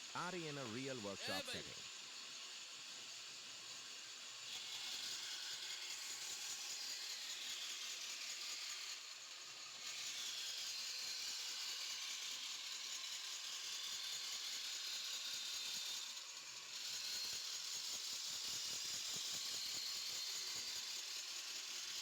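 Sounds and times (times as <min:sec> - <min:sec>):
saw cutting through wood: 0:04.5 - 0:22.0.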